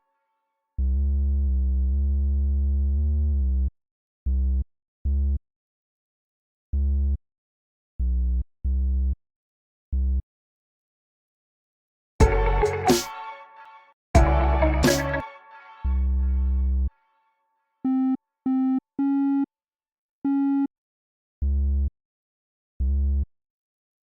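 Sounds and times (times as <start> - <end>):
synthesizer bass notes: 12.2 - 13.1, 14.2 - 15.3.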